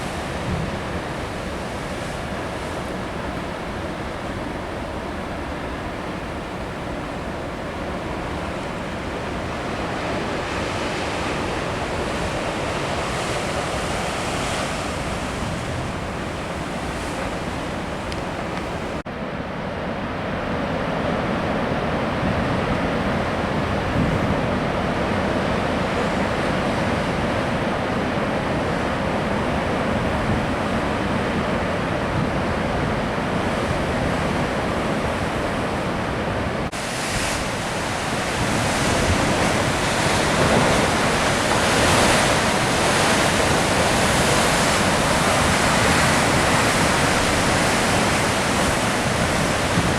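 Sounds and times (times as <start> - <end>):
ocean surf on rocky coast: 0.0 - 49.9
wind: 0.0 - 49.9.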